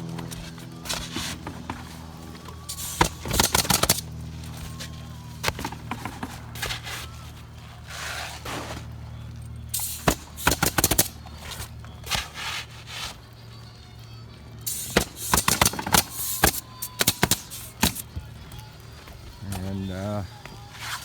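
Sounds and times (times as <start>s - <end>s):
pneumatic nail guns firing: 0.2s - 8.6s, 9.7s - 13.2s, 14.6s - 18.2s.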